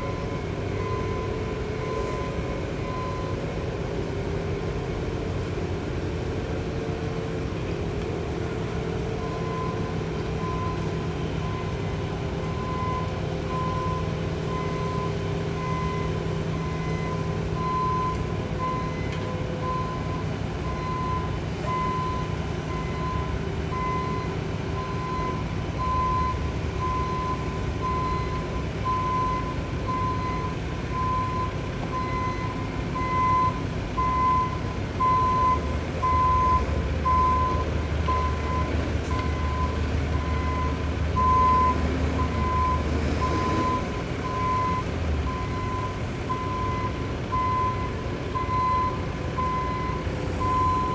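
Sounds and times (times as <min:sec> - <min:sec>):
diesel engine running: 0:00.0 - 0:50.9
backup alarm beeping: 0:09.1 - 0:50.9.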